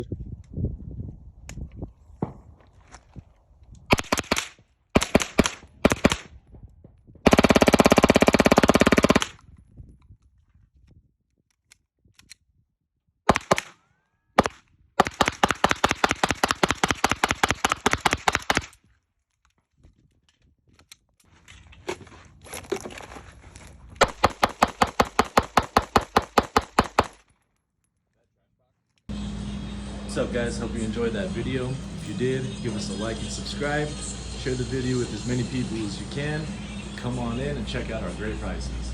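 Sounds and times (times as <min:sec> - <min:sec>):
rapid gunfire: 0:03.9 - 0:06.3, 0:07.2 - 0:09.4, 0:13.3 - 0:13.8, 0:14.4 - 0:18.7, 0:24.0 - 0:27.2.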